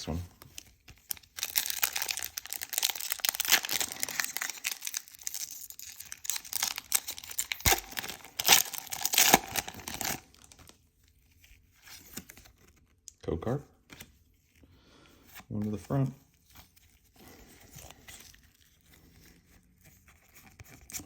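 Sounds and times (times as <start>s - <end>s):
foil wrapper crinkling and tearing: 0.4s - 10.8s.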